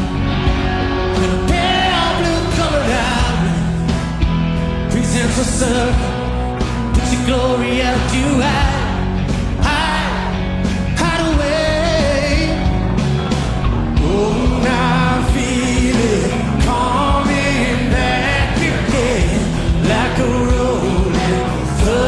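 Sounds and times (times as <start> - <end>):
rock band playing: 0.0 - 22.0
man singing: 1.0 - 3.9, 4.9 - 12.8, 14.0 - 22.0.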